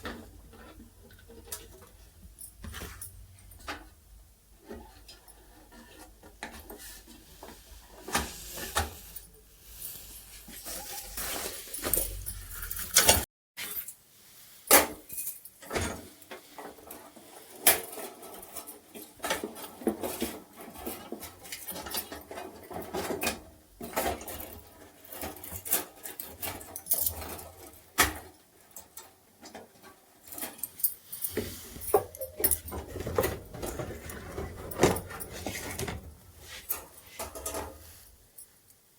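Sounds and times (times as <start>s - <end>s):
small metal parts and tools clinking: 8.6s - 14.0s, 15.0s - 28.0s, 29.8s - 38.8s.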